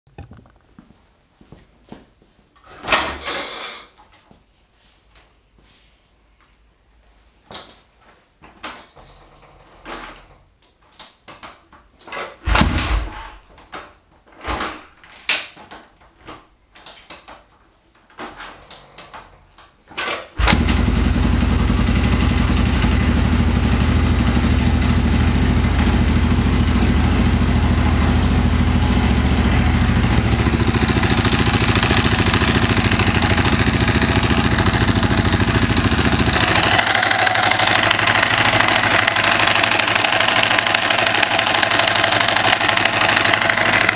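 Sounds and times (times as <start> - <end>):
motorcycle engine running: 20.4 - 43.9.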